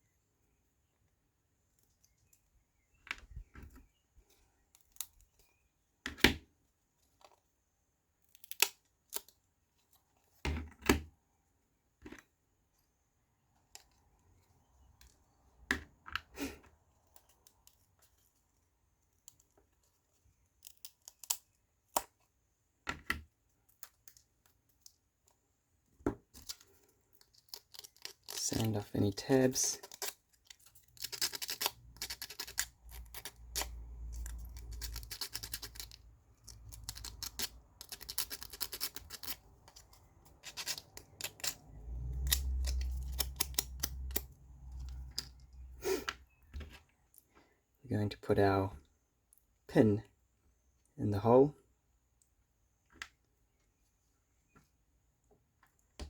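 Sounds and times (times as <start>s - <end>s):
wooden pieces clicking and snapping: 8.2s - 9.4s, 19.1s - 25.4s, 26.0s - 28.8s, 29.5s - 47.3s.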